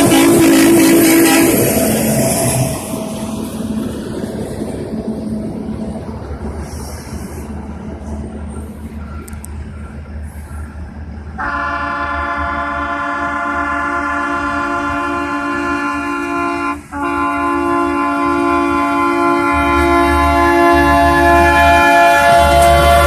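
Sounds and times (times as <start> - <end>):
multi-note air horn: 0.0 - 2.4, 11.4 - 23.0
rail equipment rumbling: 0.0 - 23.0.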